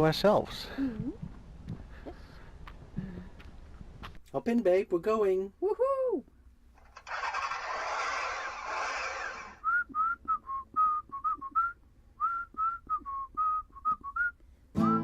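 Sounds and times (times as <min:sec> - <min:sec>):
whistled melody: 0:09.6 - 0:15.0.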